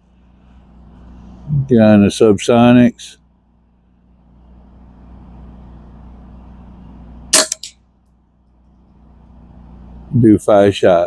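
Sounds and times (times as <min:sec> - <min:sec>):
rifle shot: 0:07.3 - 0:07.7.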